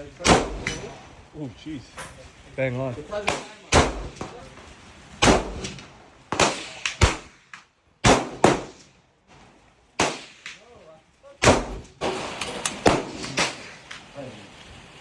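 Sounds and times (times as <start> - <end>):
gunshots with echo: 0.2 - 1.0, 3.2 - 4.4, 5.2 - 7.4, 8.0 - 8.8, 10.0 - 10.6, 11.4 - 13.9.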